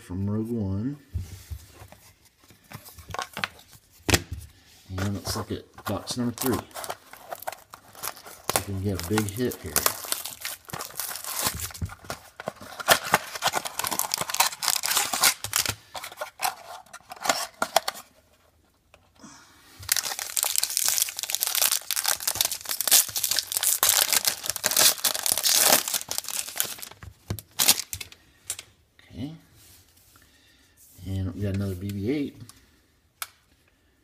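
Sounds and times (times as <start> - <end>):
plastic wrapping tearing and crinkling: 6.0 - 16.5, 19.9 - 28.1.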